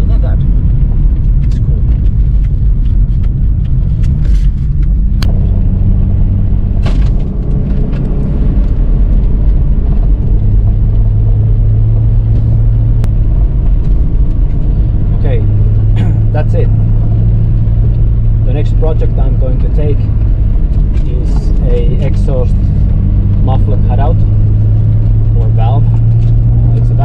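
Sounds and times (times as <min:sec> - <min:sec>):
car engine running: 0:00.0 - 0:27.0
road rumble: 0:00.0 - 0:27.0.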